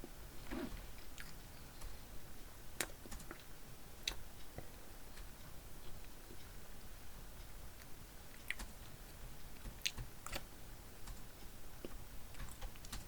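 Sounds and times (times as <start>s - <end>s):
person chewing: 0.6s - 1.9s.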